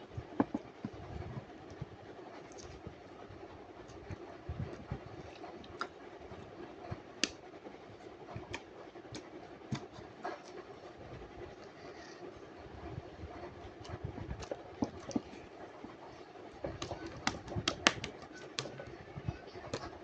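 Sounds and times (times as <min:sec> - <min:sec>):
steady low hum: 0:00.0 - 0:20.0
hands squishing sticky slime: 0:13.6 - 0:18.9.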